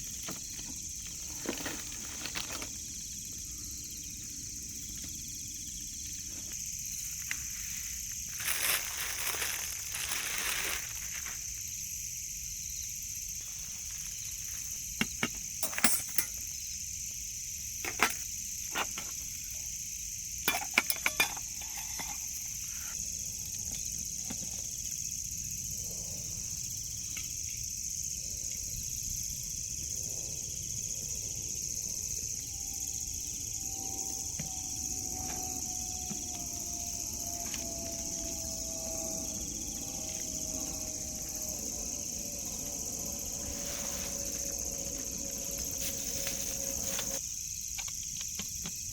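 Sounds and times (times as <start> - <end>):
insects droning: 0.0 - 48.9.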